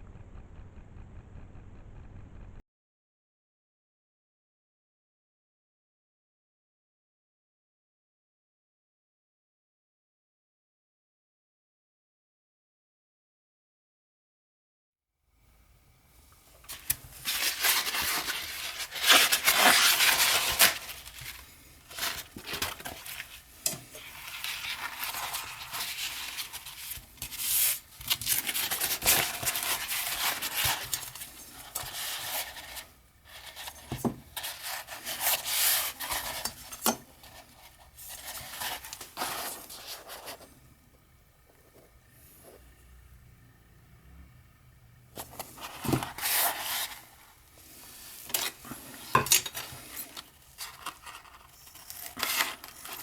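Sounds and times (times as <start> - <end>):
rubbing and scraping: 16.6 - 40.5, 45.2 - 53.0.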